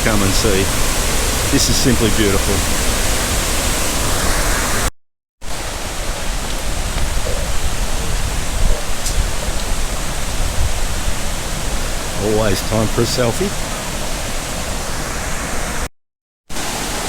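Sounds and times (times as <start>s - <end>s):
waterfall rushing: 0.0s - 15.9s, 16.5s - 17.0s.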